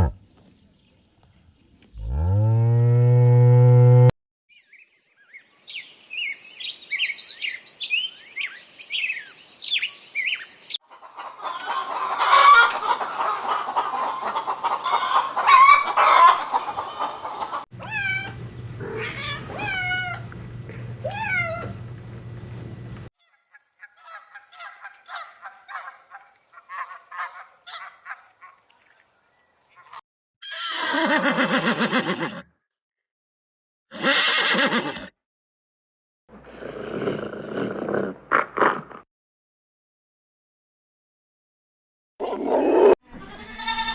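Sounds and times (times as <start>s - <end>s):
fowl chirping and clucking: 10.9s - 20.3s.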